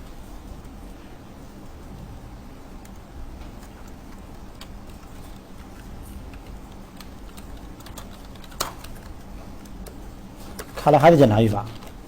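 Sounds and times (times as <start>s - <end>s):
low steady hum: 0.0s - 12.0s
keyboard keys clicking: 2.8s - 11.0s.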